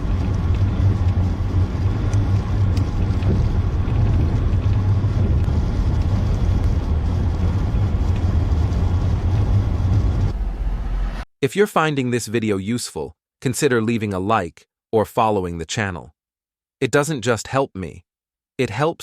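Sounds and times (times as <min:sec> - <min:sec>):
loud low rumbling: 0:00.0 - 0:11.3.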